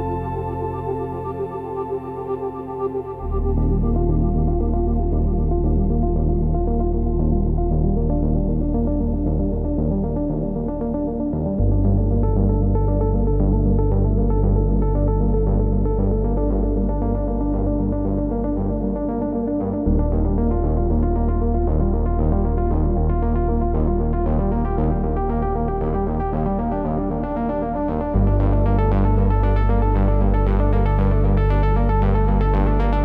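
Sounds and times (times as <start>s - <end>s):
deep bass drone: 0.0s - 33.0s
synthesizer pads: 0.0s - 33.0s.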